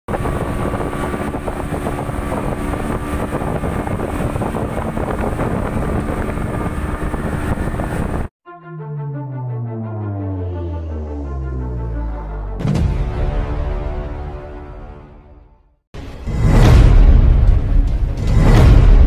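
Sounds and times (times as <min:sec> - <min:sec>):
wind buffeting microphone: 0:00.1 - 0:08.3
boat engine running: 0:00.1 - 0:12.6
music with falling tone: 0:08.4 - 0:13.9.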